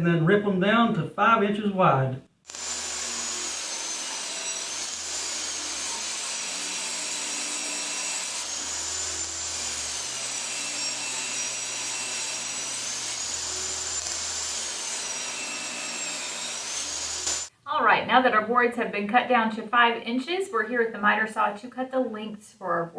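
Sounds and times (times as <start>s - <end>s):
woodworking power tool whining: 2.5s - 17.5s.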